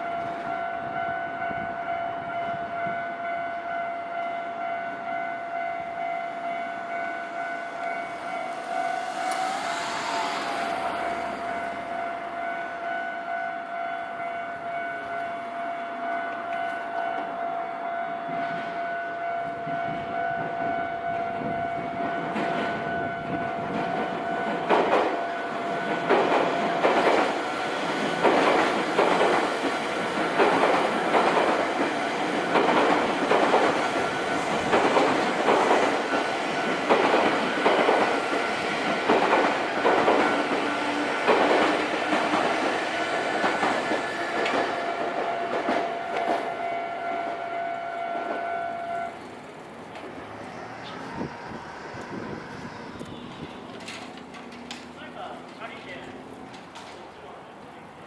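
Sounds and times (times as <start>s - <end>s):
train rumble: 0.0s - 17.4s, 18.2s - 58.0s
level crossing warning bell: 0.0s - 49.4s
train wheels clacking over rail joints: 21.8s - 47.4s, 48.1s - 57.3s.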